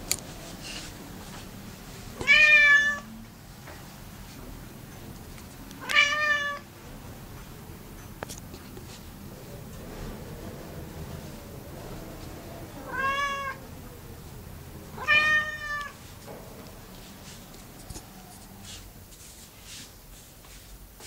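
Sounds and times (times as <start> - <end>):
cat meowing: 2.2 - 3.1, 5.8 - 6.7, 12.8 - 13.6, 15.0 - 16.0.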